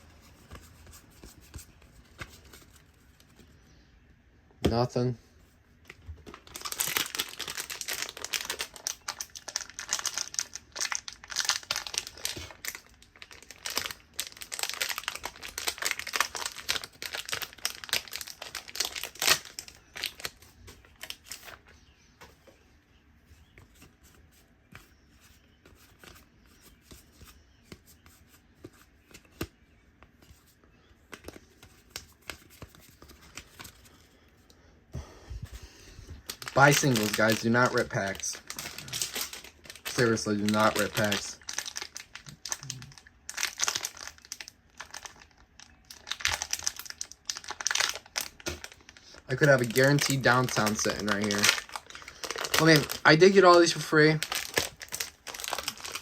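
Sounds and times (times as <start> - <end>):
cards rustling and ticking: 5.8 - 22.6, 23.4 - 34.1, 35.5 - 56.0
wrapper tearing and crinkling: 6.3 - 20.4, 36.3 - 56.0.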